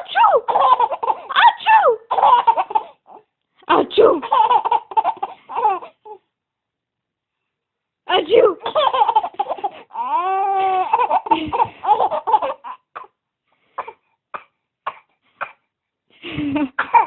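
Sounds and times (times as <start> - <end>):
baby laughing: 0.0 - 3.2, 4.0 - 6.2, 8.5 - 13.0, 16.4 - 17.0.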